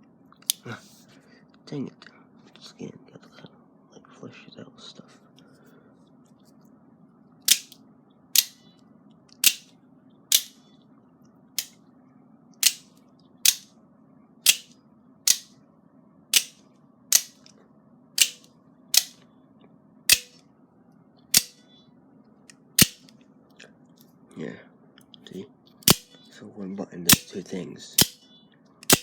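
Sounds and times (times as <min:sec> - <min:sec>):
automatic knife blade snapping: 0:07.5 - 0:07.8, 0:09.4 - 0:09.7, 0:12.6 - 0:12.8, 0:14.5 - 0:14.7, 0:15.3 - 0:15.5, 0:16.4 - 0:17.4, 0:18.2 - 0:19.2, 0:20.1 - 0:20.4, 0:22.8 - 0:23.1, 0:25.8 - 0:26.0.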